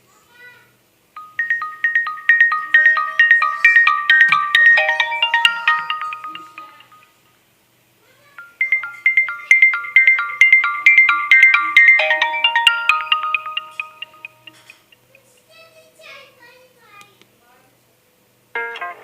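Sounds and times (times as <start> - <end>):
mobile phone ringtone melody: 1.2 - 7.2, 8.4 - 14.9.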